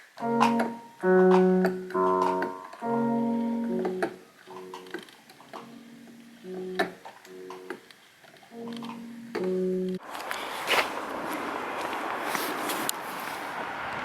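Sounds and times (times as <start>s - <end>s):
sustained instrumental chords: 0.0s - 7.8s, 8.5s - 10.0s.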